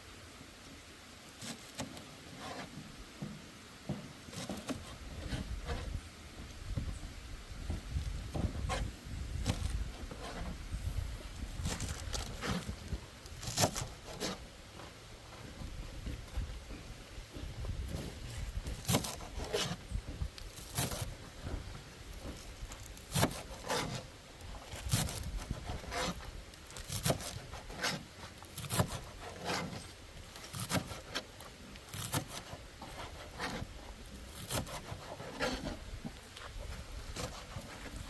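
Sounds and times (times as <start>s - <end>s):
short scraping strokes: 23.0s - 24.1s, 24.7s - 31.3s.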